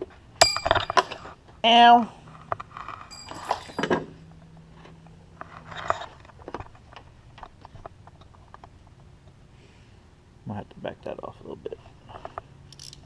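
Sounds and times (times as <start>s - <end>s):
metal parts and tools clinking: 0.4s - 1.3s, 2.8s - 4.2s, 12.7s - 13.0s
short metallic ring: 0.4s - 1.3s, 3.1s - 4.2s.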